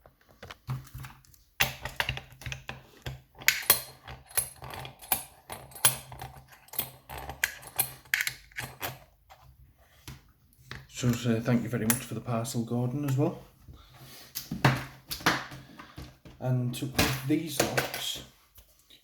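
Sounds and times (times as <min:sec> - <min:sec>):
metal locks and keys clicking: 0:03.4 - 0:09.0.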